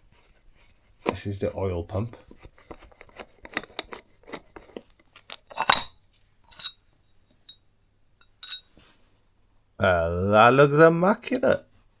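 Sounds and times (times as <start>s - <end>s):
metallic clinks of hand tools: 8.4s - 8.7s.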